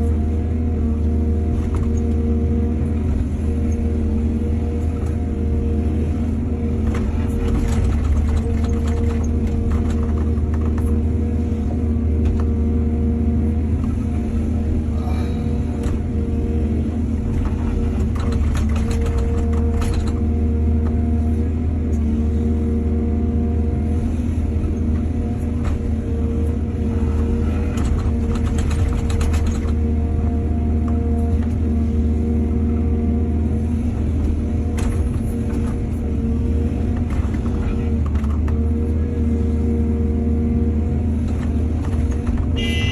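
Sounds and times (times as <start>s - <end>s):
excavator diesel engine running: 0.0s - 42.9s
knocks and rattles: 6.9s - 11.0s, 17.3s - 20.3s, 27.6s - 29.8s.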